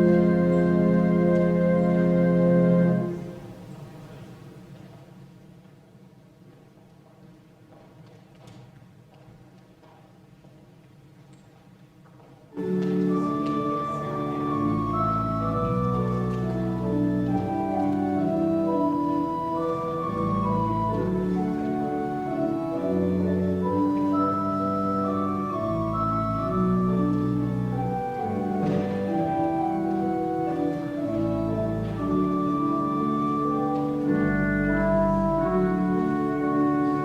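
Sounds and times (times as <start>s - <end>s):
church organ chords: 0.0s - 4.5s, 12.6s - 37.0s.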